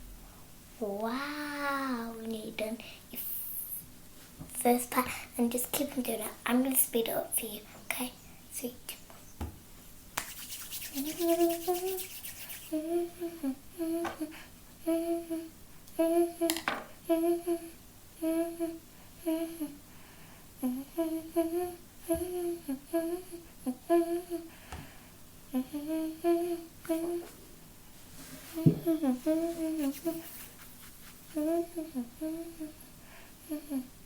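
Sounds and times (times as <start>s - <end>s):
woman humming a tune: 11.0s - 19.8s, 20.6s - 24.5s, 25.5s - 27.4s, 28.5s - 30.3s, 31.3s - 34.0s.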